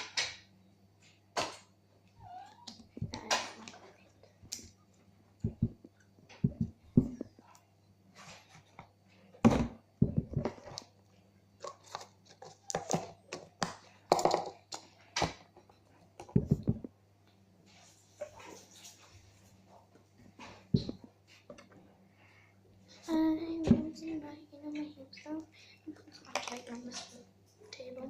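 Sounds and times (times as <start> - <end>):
steady low hum: 0.0 - 12.3.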